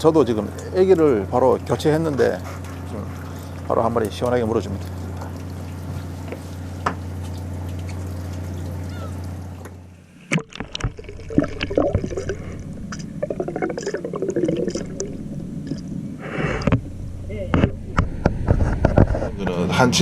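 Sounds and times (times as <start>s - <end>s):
low machine hum: 0.0s - 20.0s
water splashing and dripping: 2.6s - 16.1s.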